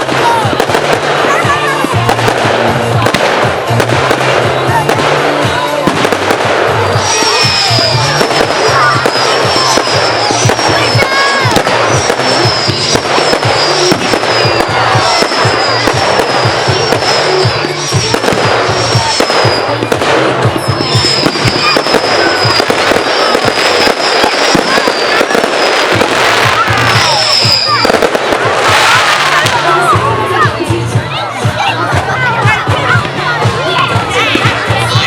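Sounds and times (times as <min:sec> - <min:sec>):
fireworks banging and crackling: 0:00.0 - 0:35.0
music with stepping bass line: 0:00.0 - 0:35.0
high thin whistle: 0:20.6 - 0:25.3, 0:26.8 - 0:28.0.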